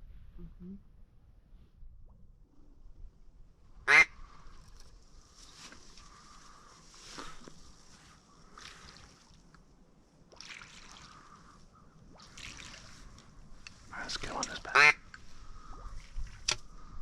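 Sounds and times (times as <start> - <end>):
water sloshing and splashing: 4.4 - 17.0.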